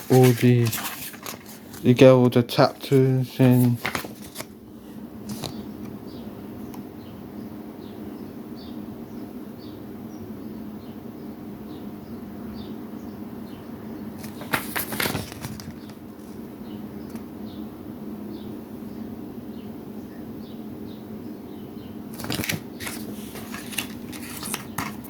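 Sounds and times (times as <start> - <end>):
packaging rustling and clicks: 0.0 - 2.0, 2.7 - 4.6, 14.2 - 16.3, 22.1 - 25.0.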